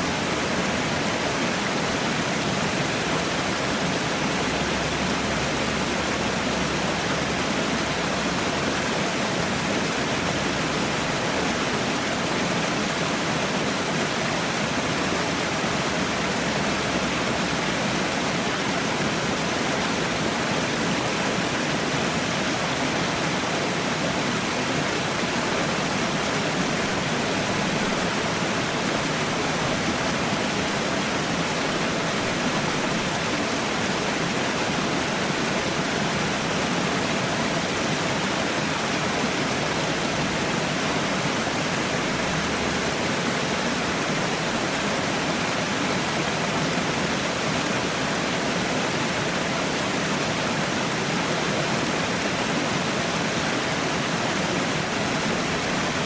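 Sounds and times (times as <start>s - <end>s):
falling water rushing: 0.0s - 56.0s.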